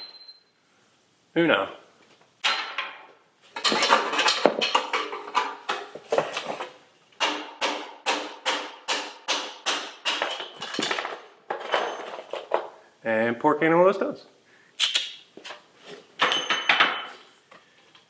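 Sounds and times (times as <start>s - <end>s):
hammer striking metal pry bar: 7.2s - 10.6s.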